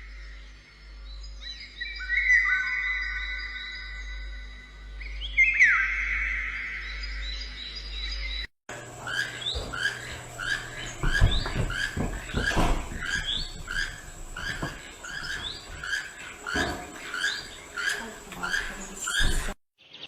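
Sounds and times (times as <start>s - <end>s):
bird chirping: 0.0s - 20.0s
low thumps: 8.8s - 19.6s.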